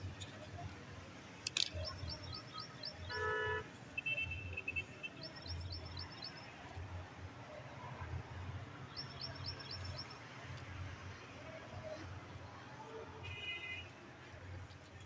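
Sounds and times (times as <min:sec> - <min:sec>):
vehicle horn toot: 0:03.1 - 0:04.8.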